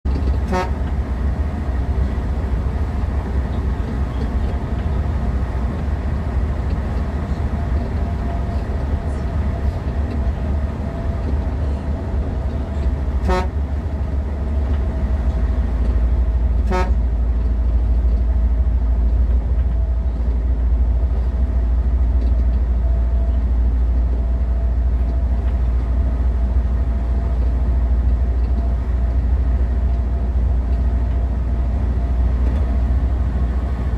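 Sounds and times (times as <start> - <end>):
moving vehicle rumble: 0.0 - 33.9
vehicle horn toots: 0.4 - 0.9, 13.2 - 13.6, 16.6 - 17.0.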